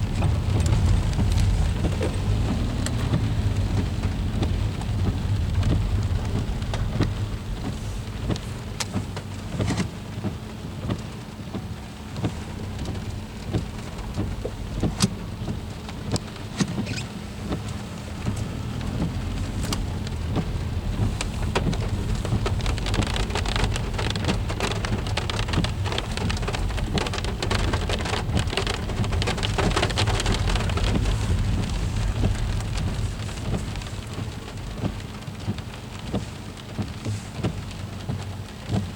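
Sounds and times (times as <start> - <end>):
freezing rain pattering: 0.0 - 38.9
steady low rumble: 0.0 - 38.9.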